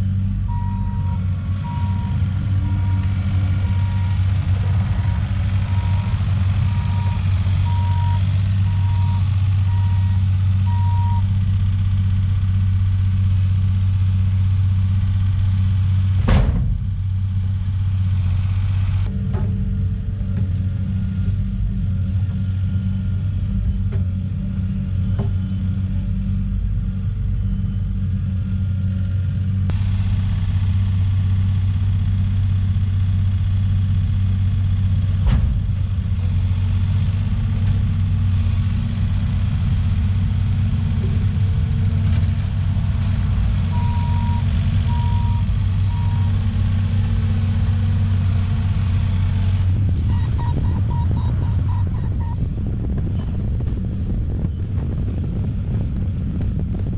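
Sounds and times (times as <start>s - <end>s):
diesel engine running: 0.0s - 56.9s
backup alarm beeping: 0.5s - 4.4s, 5.0s - 11.3s, 43.7s - 46.3s, 50.1s - 52.4s.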